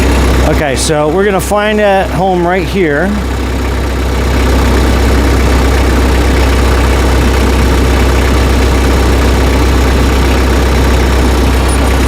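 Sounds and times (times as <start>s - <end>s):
tractor engine running: 0.0s - 12.0s.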